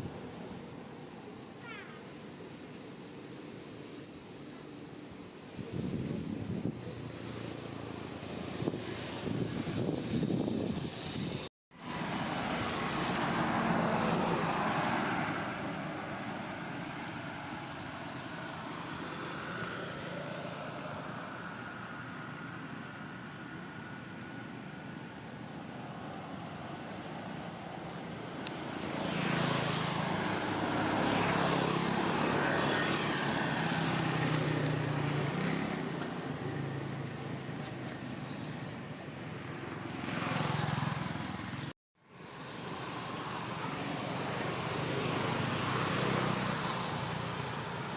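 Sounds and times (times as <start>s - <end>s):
vehicles driving past: 5.3s - 47.9s
wind on microphone: 5.5s - 7.4s, 8.2s - 11.5s
vehicle passing: 11.8s - 23.2s, 28.2s - 37.1s.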